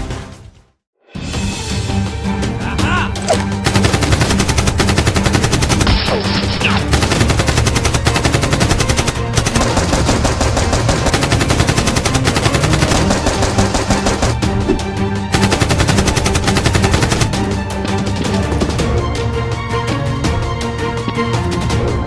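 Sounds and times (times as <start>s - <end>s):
background music: 0.0s - 22.0s
machine-gun fire: 3.6s - 14.4s, 15.4s - 17.4s.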